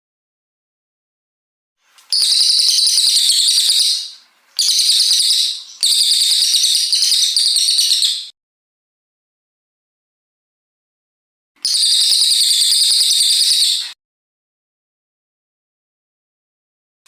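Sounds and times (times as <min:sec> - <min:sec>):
songbird singing rapid trills: 0:02.1 - 0:08.3.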